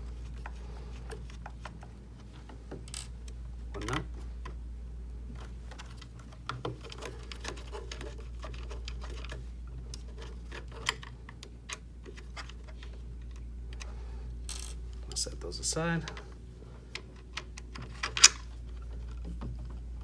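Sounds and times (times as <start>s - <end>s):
steady low hum: 0.0s - 20.0s
tool and fasteners clicking: 17.0s - 18.6s.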